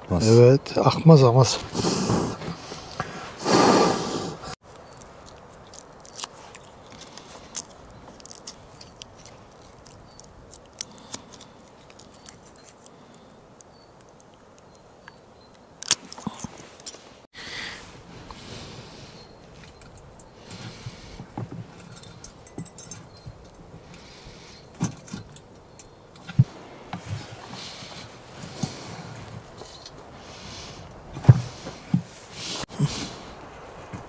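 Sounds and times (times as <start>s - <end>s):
faint steady background noise: 0.0s - 34.0s.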